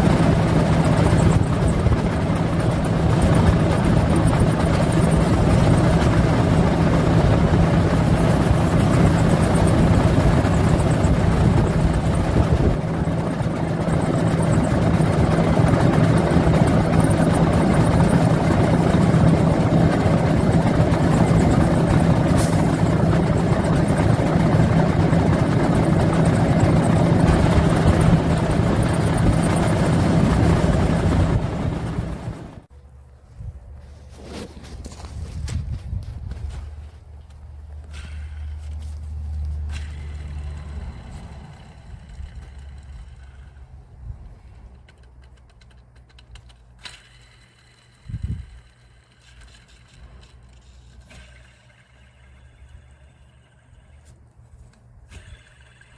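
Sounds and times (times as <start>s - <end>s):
truck diesel engine running: 0.0s - 32.7s.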